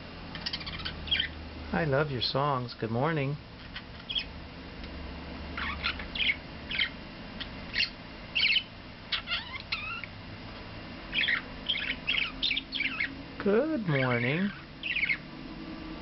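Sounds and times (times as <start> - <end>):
budgie chirping: 0.4 - 1.4, 3.6 - 4.4, 5.5 - 10.2, 11.1 - 13.2, 13.9 - 15.3.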